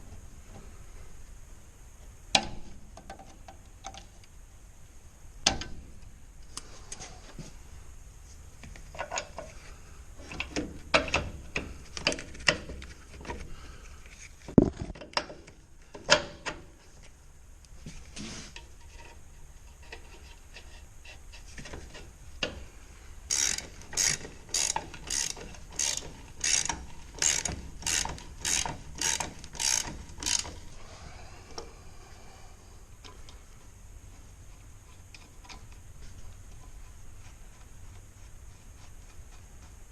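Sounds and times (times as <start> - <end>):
ratchet wrench clicking: 23.3 - 30.7.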